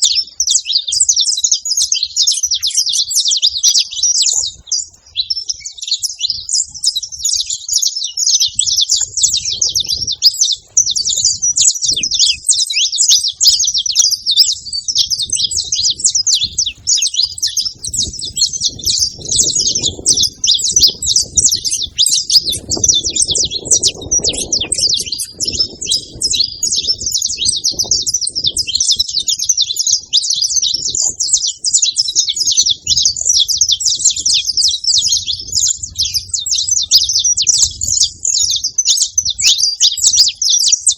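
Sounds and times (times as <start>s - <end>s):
flock of finches chirping: 0.0s - 40.9s.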